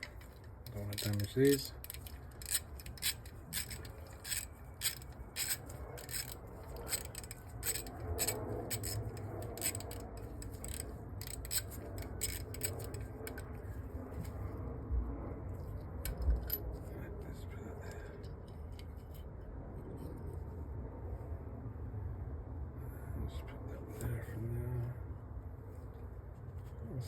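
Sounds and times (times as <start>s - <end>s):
metal parts and tools clicking: 0.0s - 13.5s, 16.1s - 16.8s.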